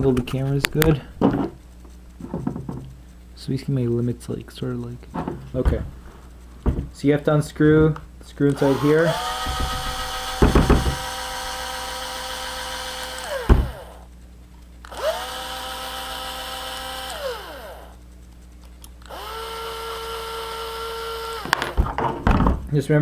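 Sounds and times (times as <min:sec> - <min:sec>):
power driver motor whine: 0:08.5 - 0:14.1, 0:14.8 - 0:18.0, 0:19.0 - 0:21.9.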